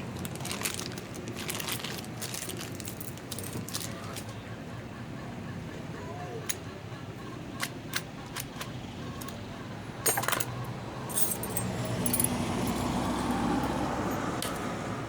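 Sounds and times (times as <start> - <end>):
metal parts clinking and rattling: 0.2 - 4.4, 7.6 - 9.4, 10.0 - 14.6.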